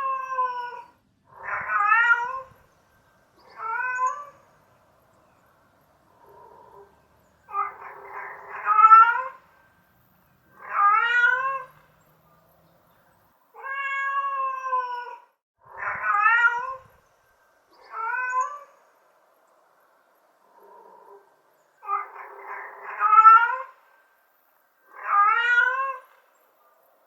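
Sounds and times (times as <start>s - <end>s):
cat meowing: 0.0s - 2.6s, 3.4s - 4.4s, 7.5s - 9.4s, 10.6s - 11.9s, 13.6s - 16.9s, 17.8s - 18.8s, 21.8s - 23.8s, 24.9s - 26.2s.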